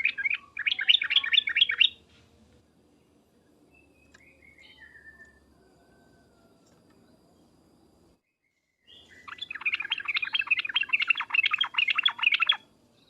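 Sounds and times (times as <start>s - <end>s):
bird chattering song: 0.0s - 2.1s, 8.8s - 12.7s.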